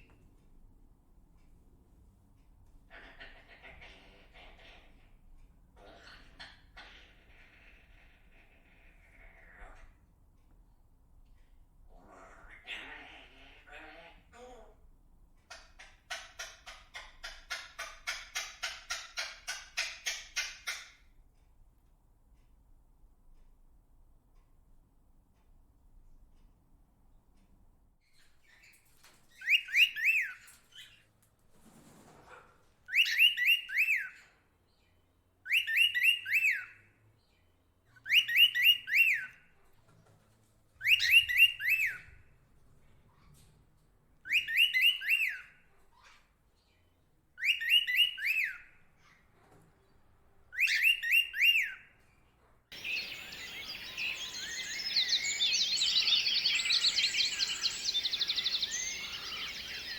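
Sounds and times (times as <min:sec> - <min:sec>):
chorus of bird calls: 0:52.7 - 0:59.9
songbird repeating phrase: 0:52.8 - 0:59.9.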